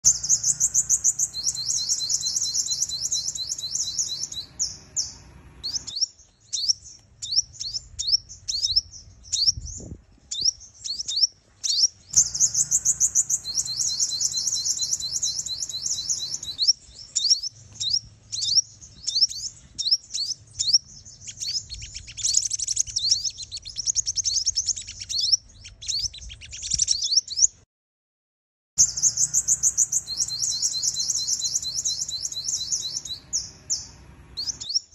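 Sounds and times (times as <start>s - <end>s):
bird sharp chips: 0.0s - 7.8s, 10.9s - 20.3s
bird twittering trills: 0.0s - 27.6s, 28.8s - 34.9s.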